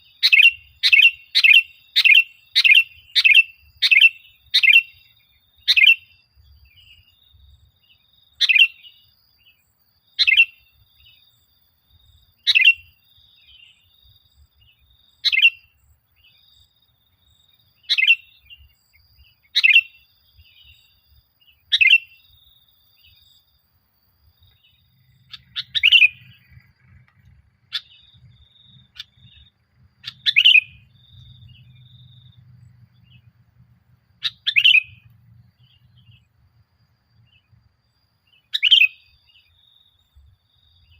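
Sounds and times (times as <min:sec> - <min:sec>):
bulbul singing bright call: 0:00.0 - 0:11.4, 0:12.0 - 0:23.5, 0:24.4 - 0:36.4, 0:38.2 - 0:40.9.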